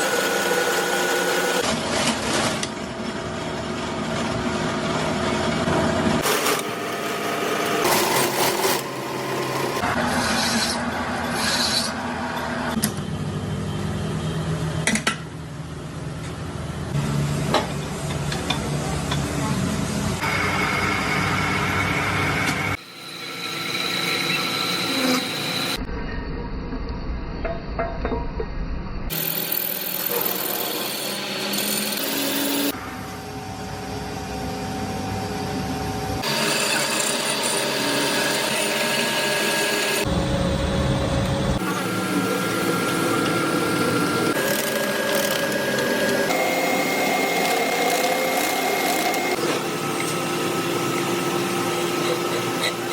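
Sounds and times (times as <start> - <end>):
metalworking machine humming: 0.0 - 11.4, 29.1 - 52.9
power tools grinding metal: 6.2 - 12.0, 29.1 - 32.8, 36.2 - 40.1, 41.6 - 52.9.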